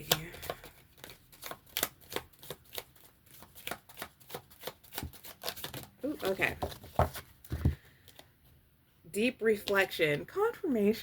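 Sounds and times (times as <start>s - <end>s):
cards being shuffled: 0.0s - 8.3s.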